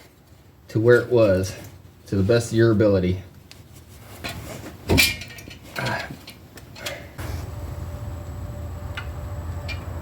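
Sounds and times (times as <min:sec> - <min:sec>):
steady low hum: 0:03.2 - 0:10.0
metal parts clicking and clinking: 0:04.9 - 0:07.1.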